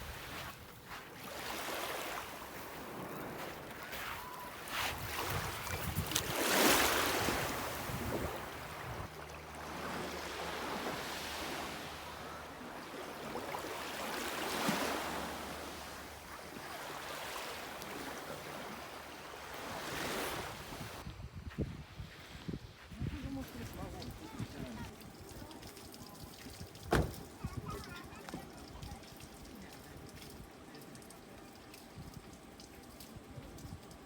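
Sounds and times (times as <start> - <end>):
waves breaking on shore: 0.0 - 21.0
wind on microphone: 4.7 - 9.1, 20.4 - 25.0.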